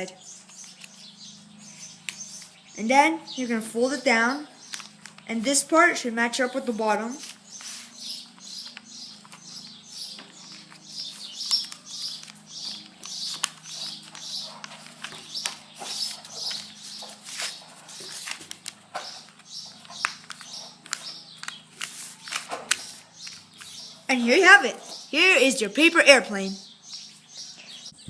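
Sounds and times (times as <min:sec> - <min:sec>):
paper being folded and creased: 0:04.7 - 0:05.3, 0:10.2 - 0:23.8.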